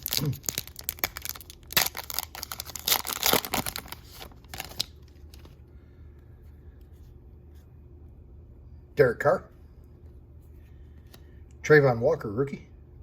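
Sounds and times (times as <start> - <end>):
plastic wrapper crinkling: 0.0 - 5.5.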